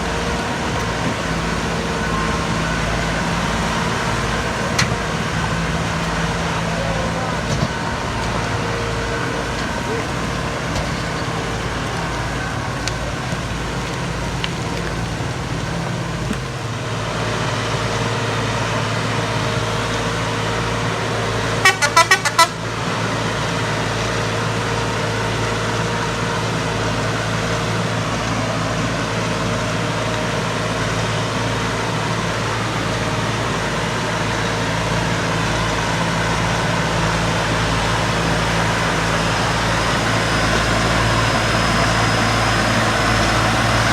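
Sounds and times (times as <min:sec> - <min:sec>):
tractor diesel engine running: 0:00.0 - 0:43.9
short horn toots: 0:21.6 - 0:22.6.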